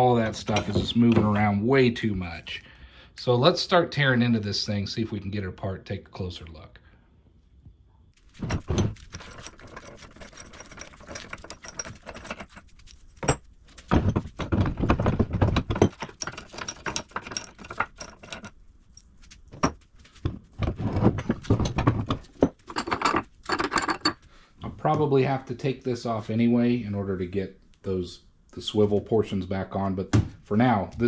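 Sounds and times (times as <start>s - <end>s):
metal tools clinking and knocking: 0.2s - 1.5s, 8.3s - 19.9s, 20.6s - 24.3s.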